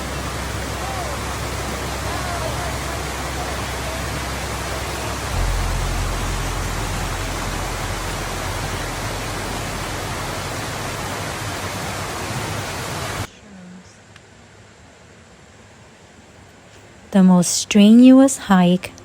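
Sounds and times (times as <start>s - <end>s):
waterfall rushing: 0.0s - 13.3s
deep rumble: 2.8s - 12.2s.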